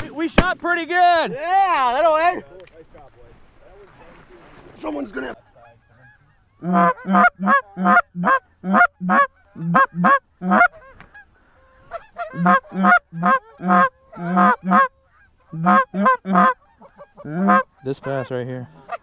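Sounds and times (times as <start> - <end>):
goose honking: 4.8 - 19.0.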